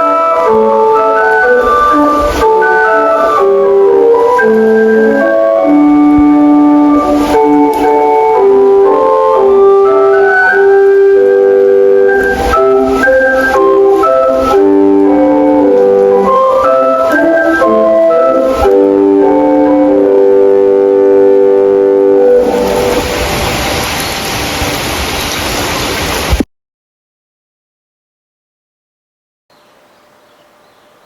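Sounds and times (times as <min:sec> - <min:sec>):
electronic organ-like chime melody: 0:00.0 - 0:23.2.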